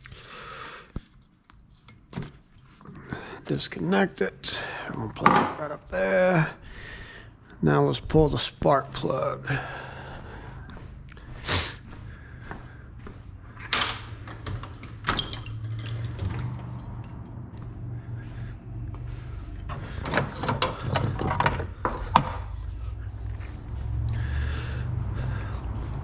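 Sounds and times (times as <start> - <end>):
low hum: 15.0 - 21.3
ringing metallic clink: 15.2 - 16.2.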